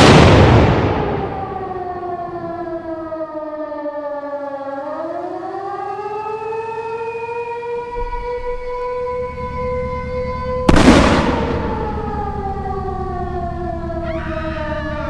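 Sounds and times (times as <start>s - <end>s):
loud boom rumble: 0.0s - 2.4s, 10.7s - 12.4s
air-raid siren wailing: 0.0s - 15.0s.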